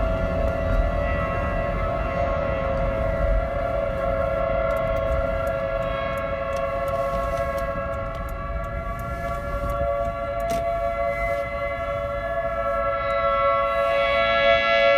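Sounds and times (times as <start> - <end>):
low vehicle rumble: 0.0 - 14.9
two-tone warning siren: 0.0 - 14.9.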